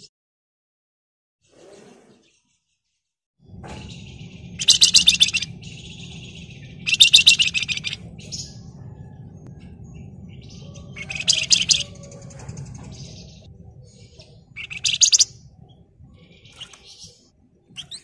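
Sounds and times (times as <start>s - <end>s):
faint low hum: 3.4s - 18.0s
songbird scratchy trills: 3.6s - 18.0s.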